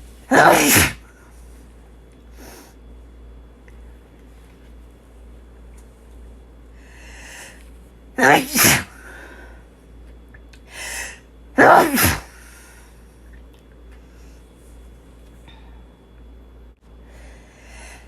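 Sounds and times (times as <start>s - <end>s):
person sneezing: 0.3s - 1.1s, 8.2s - 9.2s, 11.6s - 12.5s.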